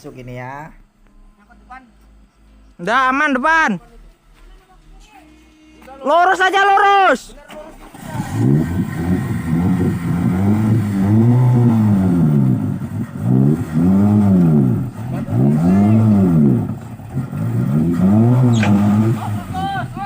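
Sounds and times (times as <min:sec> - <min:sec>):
off-road vehicle engine revving: 0:07.4 - 0:20.0.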